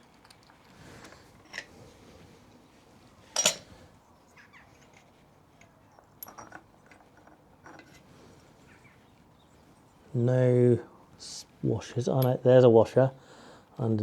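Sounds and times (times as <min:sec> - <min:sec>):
metal tools clinking: 0:00.0 - 0:01.7, 0:03.3 - 0:03.8, 0:04.7 - 0:08.0.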